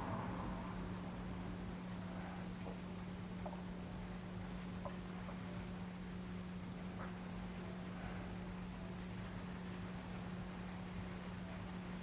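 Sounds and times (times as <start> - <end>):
low hum: 0.0 - 1.8.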